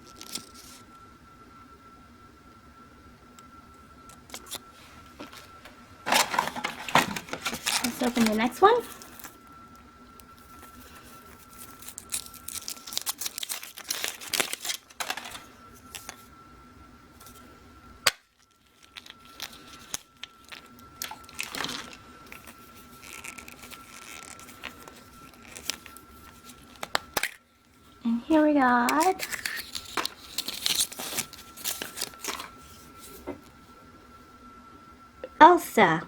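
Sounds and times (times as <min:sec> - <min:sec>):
foil wrapper crinkling: 0:00.0 - 0:00.8, 0:04.1 - 0:04.7, 0:05.4 - 0:09.6, 0:10.2 - 0:16.3, 0:18.1 - 0:33.3.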